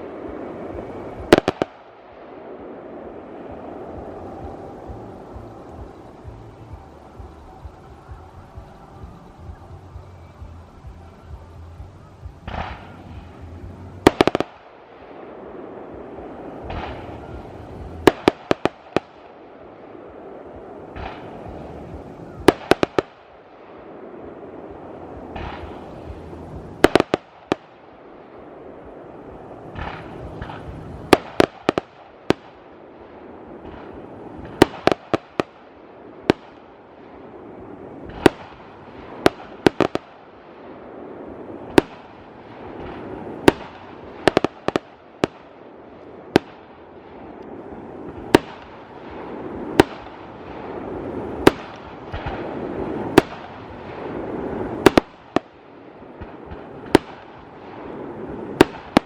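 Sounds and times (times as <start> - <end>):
rushing noise: 0.0 - 31.7
fireworks bursting with loud bangs: 0.0 - 59.0.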